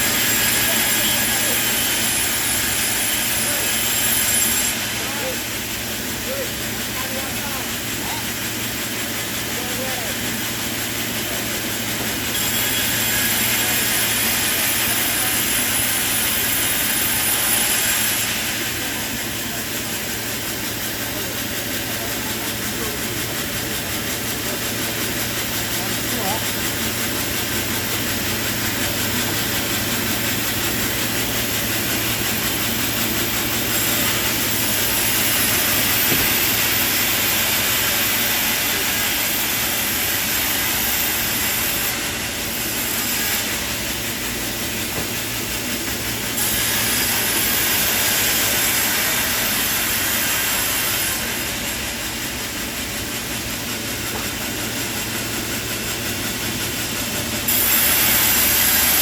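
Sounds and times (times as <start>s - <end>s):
sawmill machinery running: 0.0s - 59.0s.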